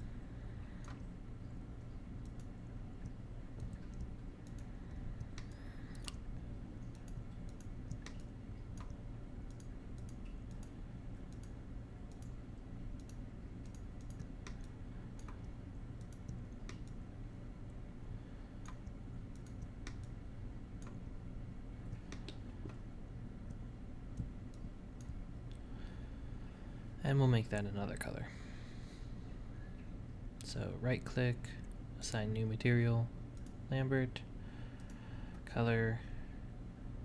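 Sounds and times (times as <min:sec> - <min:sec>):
steady low hum: 0:00.0 - 0:37.0
mouse and keyboard clicks: 0:06.8 - 0:10.7.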